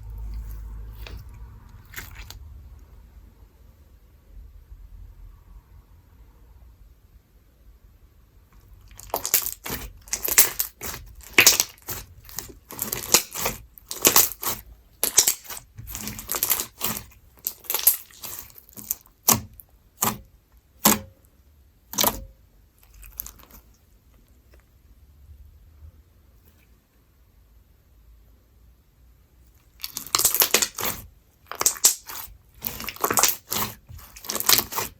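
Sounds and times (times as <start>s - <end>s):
slime squished by hand: 0.0s - 2.6s, 8.8s - 21.2s, 21.9s - 23.8s, 29.6s - 34.9s.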